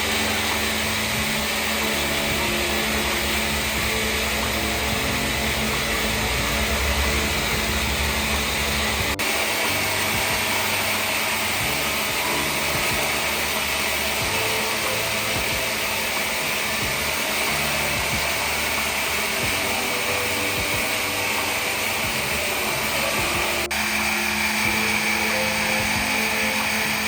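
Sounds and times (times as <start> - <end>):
low hum: 0.0 - 27.0
machine whirring: 0.0 - 27.0.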